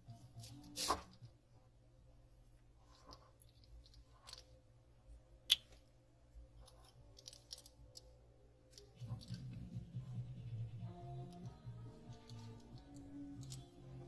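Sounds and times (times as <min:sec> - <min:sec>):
small clicks and handling noises: 0:06.6 - 0:09.6, 0:11.2 - 0:14.0.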